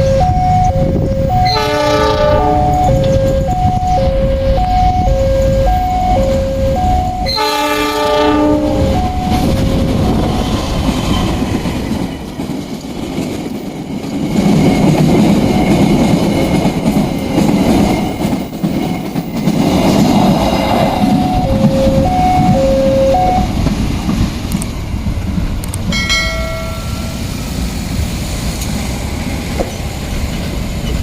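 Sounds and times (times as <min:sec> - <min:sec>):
locomotive horn blast: 0:00.0 - 0:09.8
freight train rumbling over bridge: 0:00.0 - 0:31.0.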